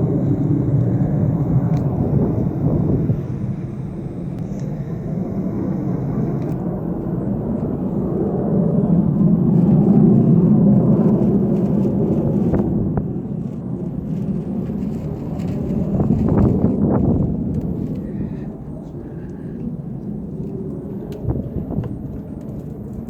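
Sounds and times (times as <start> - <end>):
deep rumbling drone in sky: 0.0 - 23.0.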